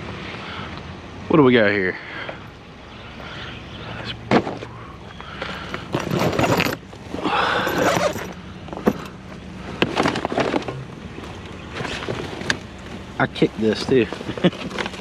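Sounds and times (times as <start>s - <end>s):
junk knocking and clattering: 5.4s - 9.2s
scraping and rustling: 5.4s - 13.1s, 13.7s - 15.0s.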